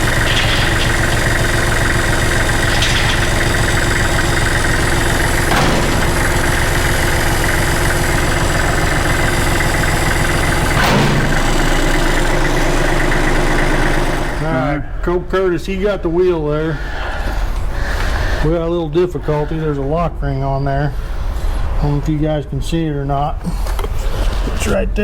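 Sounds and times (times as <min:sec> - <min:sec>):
metal knocks: 0:00.0 - 0:12.6
engine idling: 0:00.0 - 0:15.1.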